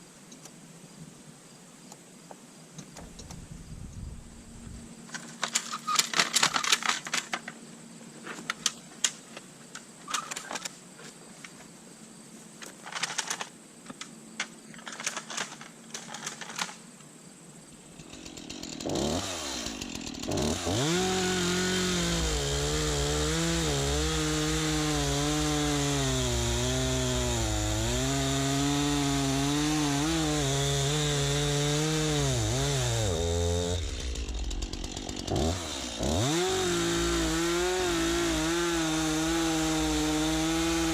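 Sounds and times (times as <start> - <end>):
chainsaw revving and cutting: 18.0 - 40.9.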